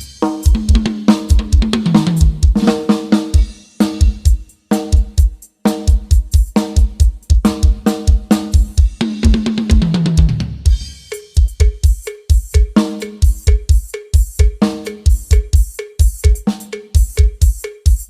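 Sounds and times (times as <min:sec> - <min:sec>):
cymbals: 0:00.0 - 0:09.8, 0:10.7 - 0:18.0
snare drum: 0:00.0 - 0:18.0
pitched drum hits falling in pitch: 0:06.8 - 0:18.0.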